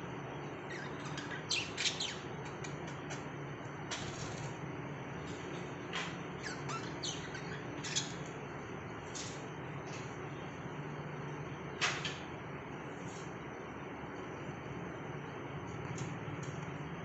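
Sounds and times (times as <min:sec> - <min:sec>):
low background hum: 0:00.0 - 0:17.0
budgerigars chirping: 0:06.5 - 0:08.2.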